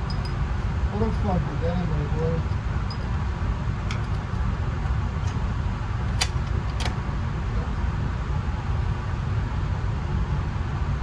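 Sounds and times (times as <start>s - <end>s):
sharp clicks: 6.1s - 7.0s.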